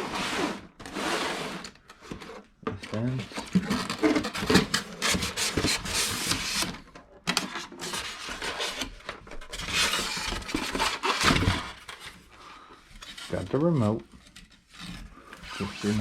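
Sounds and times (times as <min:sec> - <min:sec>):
cardboard flaps scraping: 0:14.1 - 0:16.0.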